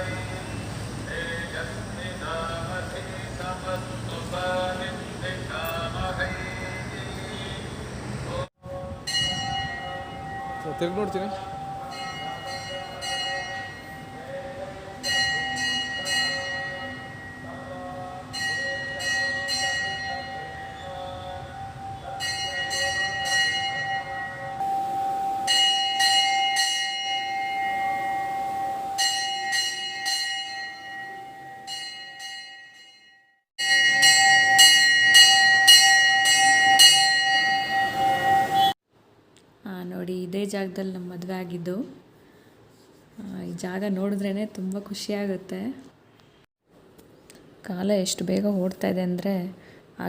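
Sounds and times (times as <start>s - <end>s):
temple bells ringing: 9.0s - 38.8s.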